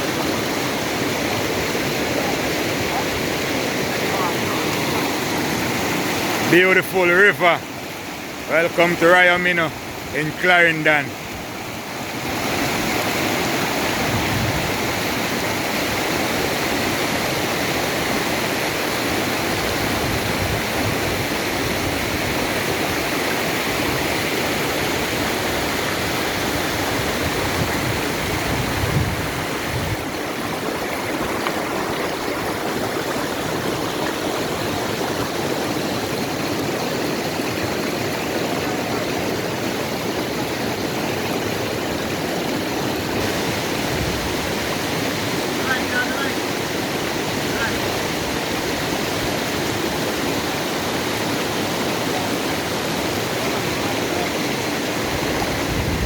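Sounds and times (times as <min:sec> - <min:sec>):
river rushing over rocks: 0:00.0 - 0:56.0.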